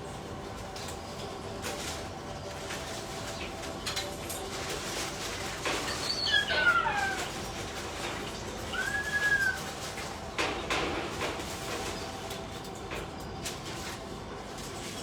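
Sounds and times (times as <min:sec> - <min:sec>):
parrot whistling calls: 0:06.1 - 0:07.3, 0:08.7 - 0:09.6.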